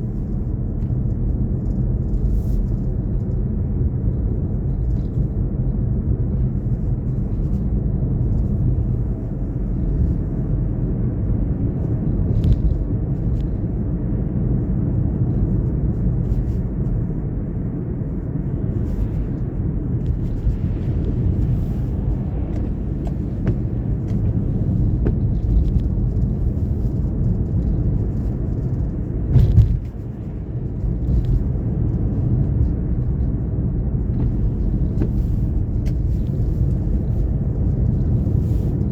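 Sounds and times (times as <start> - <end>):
car tyres and engine rumbling: 0.0 - 38.9
short thump: 29.3 - 29.9.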